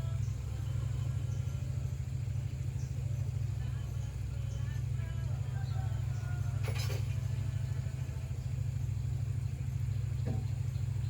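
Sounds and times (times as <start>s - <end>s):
motor humming: 0.0s - 11.0s.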